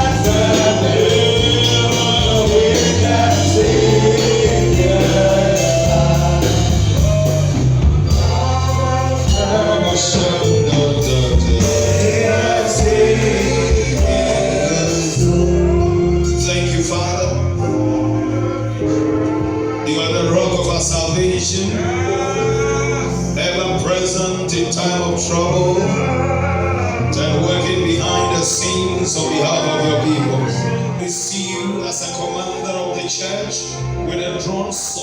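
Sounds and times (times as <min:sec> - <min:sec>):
band with bass and percussion: 0:00.0 - 0:18.3
choir singing gospel music: 0:00.0 - 0:35.0.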